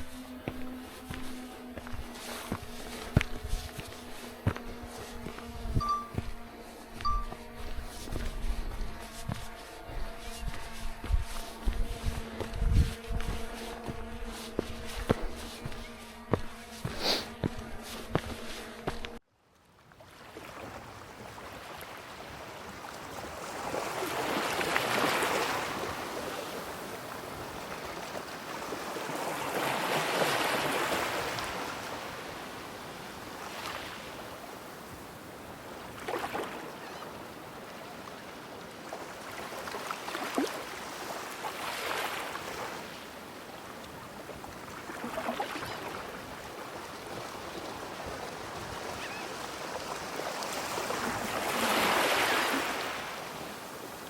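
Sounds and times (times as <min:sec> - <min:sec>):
waves breaking on shore: 0:20.0 - 0:54.0.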